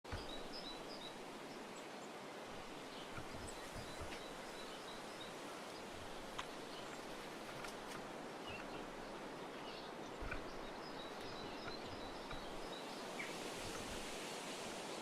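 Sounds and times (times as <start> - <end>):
small birds chirping: 0.0 - 15.0
steady outdoor hiss: 0.0 - 15.0.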